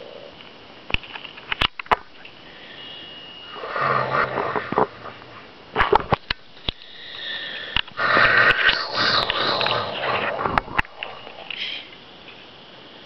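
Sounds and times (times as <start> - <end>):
girl snoring: 6.9 - 11.9.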